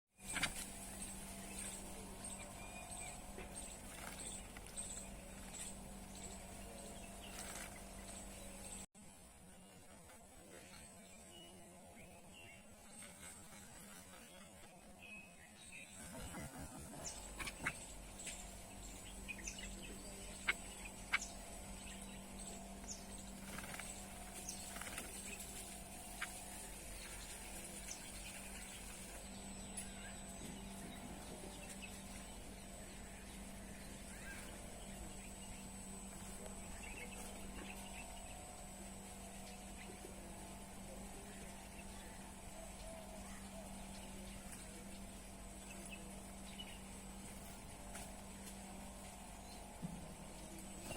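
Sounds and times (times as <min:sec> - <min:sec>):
birds splashing and fluttering in water: 0:00.2 - 0:08.8, 0:16.0 - 0:29.3
steady low hum: 0:00.2 - 0:50.9.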